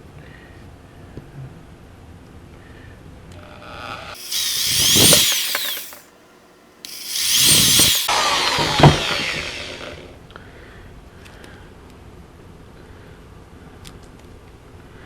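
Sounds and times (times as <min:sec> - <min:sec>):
power drill motor whine: 0:04.2 - 0:06.0, 0:06.9 - 0:10.1.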